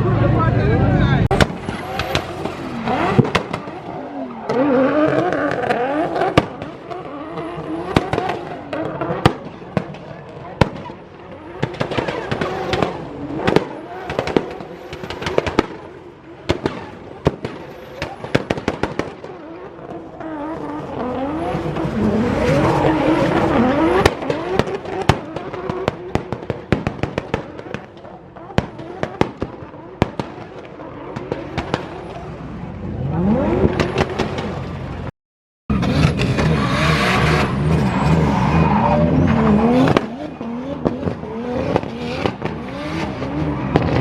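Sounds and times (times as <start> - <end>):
car engine revving: 0.0 - 35.1, 35.7 - 44.0
sharp cracking pops: 1.3 - 3.9
tyre squeal: 1.6 - 6.2, 36.2 - 40.7.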